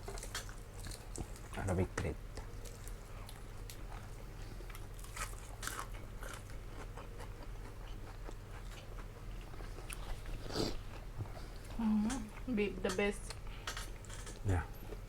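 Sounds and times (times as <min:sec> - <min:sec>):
person chewing crunchy food: 0:00.0 - 0:01.7, 0:02.3 - 0:11.8.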